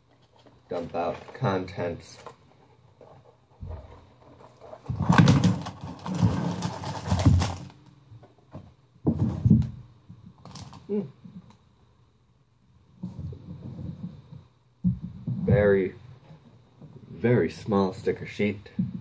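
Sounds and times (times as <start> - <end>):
cardboard box rustling and knocking: 3.3 - 7.7
plastic bags of pieces sliding out: 4.9 - 7.8.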